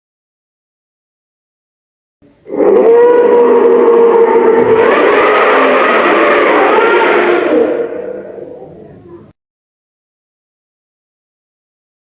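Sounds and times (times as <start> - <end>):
monster roar: 2.5 - 9.0.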